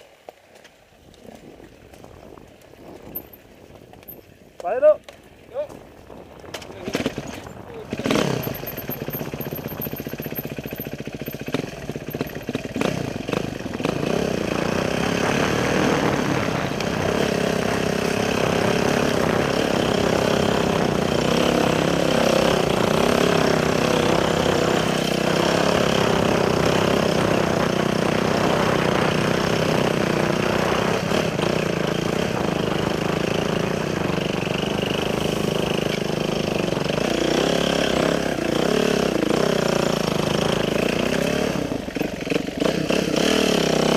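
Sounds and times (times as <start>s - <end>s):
road and wind noise: 0.0s - 43.9s
motorcycle engine running: 6.3s - 43.9s.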